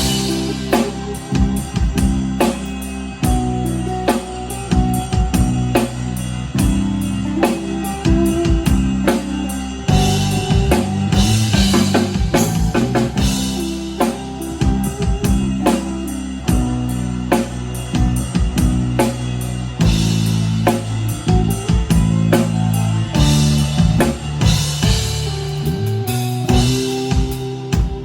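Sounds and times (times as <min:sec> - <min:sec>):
cymbals washing: 0:00.0 - 0:28.0
live band playing instrumental: 0:00.0 - 0:28.0.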